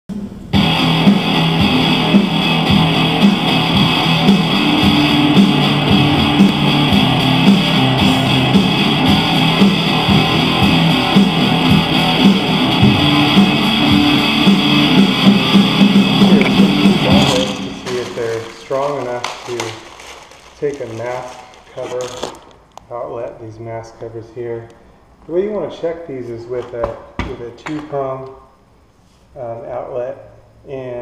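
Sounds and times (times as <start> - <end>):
guitar-led music: 0.5 - 19.6.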